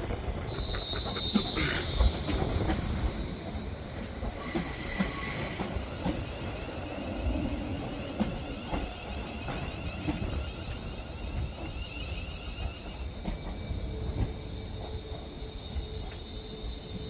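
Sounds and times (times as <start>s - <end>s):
train rumble: 0.0s - 17.0s
high brake squeal: 0.5s - 3.8s, 4.4s - 5.8s, 8.8s - 17.0s.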